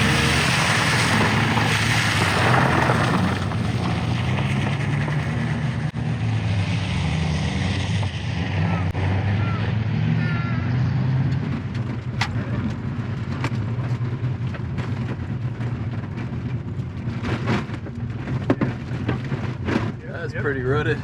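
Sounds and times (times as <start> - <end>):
gravel spattering against car: 0.0 - 5.8
car engine running: 0.0 - 6.0.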